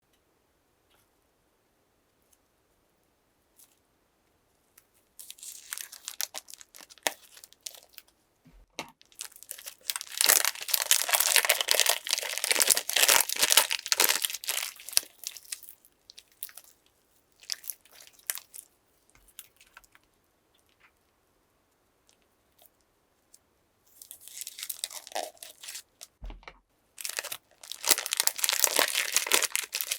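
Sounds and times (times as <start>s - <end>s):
slime crackling: 5.2s - 7.9s, 9.1s - 16.6s, 24.1s - 25.9s, 27.0s - 29.9s.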